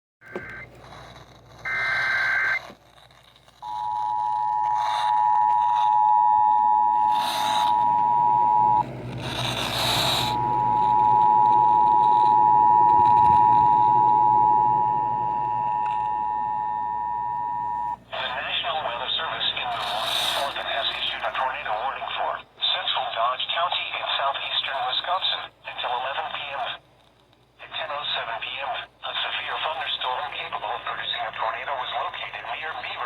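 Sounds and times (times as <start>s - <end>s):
radio static: 0.2s - 0.7s, 1.7s - 2.8s, 3.6s - 26.8s, 27.6s - 33.0s
two-tone attention signal: 0.2s - 0.7s, 3.6s - 8.8s, 9.5s - 18.0s
reception static crackles: 0.2s - 33.0s.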